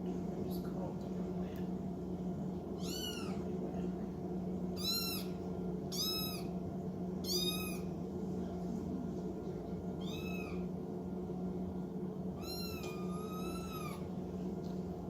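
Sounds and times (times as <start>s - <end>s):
kittens mewing: 2.8s - 3.5s, 4.8s - 6.6s, 7.2s - 7.9s, 10.0s - 10.7s, 12.4s - 14.1s.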